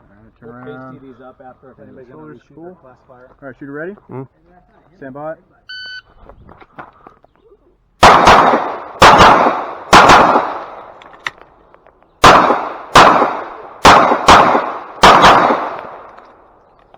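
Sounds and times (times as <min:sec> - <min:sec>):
pistol shots: 0:08.0 - 0:11.4, 0:12.2 - 0:16.6.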